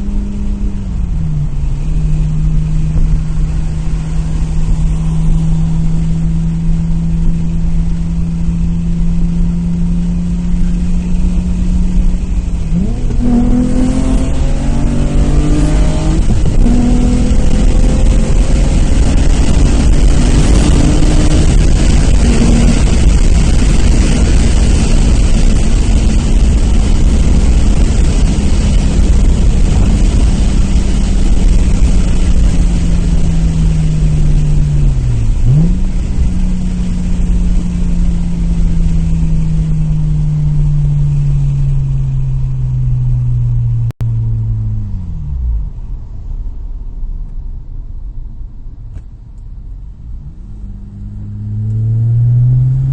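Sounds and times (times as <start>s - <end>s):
car engine: 0.0s - 52.9s
road and wind hiss: 0.0s - 52.9s.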